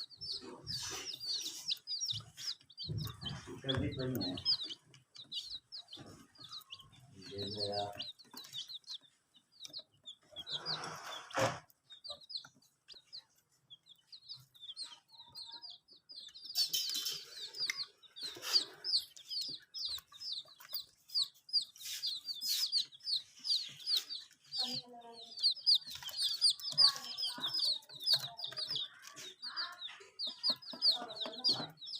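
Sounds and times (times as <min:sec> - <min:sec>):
baby chicks peeping: 0:00.0 - 0:31.9.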